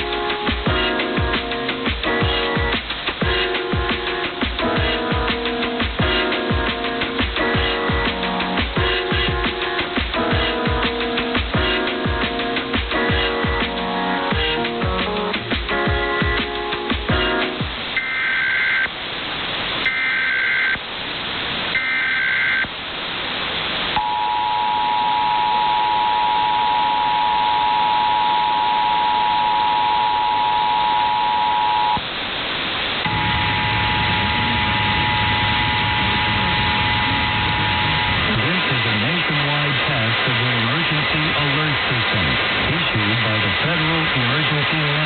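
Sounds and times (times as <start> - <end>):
radio hiss: 0.0 - 45.0
screeching data bursts: 18.0 - 18.9, 19.8 - 20.8, 21.7 - 22.7, 33.0 - 38.4
two-tone attention signal: 18.0 - 18.9, 19.9 - 20.8, 21.8 - 22.7, 24.0 - 32.0, 33.1 - 38.4.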